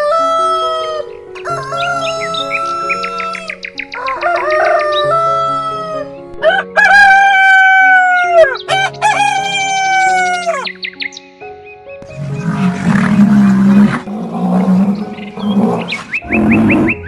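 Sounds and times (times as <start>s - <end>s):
soft background music: 0.0s - 17.0s
rooster crowing: 1.4s - 10.6s.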